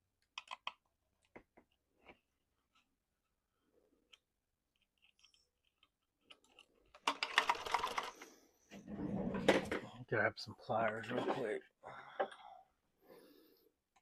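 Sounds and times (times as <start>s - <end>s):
small hard parts clicking: 0.2s - 1.8s, 4.1s - 8.3s.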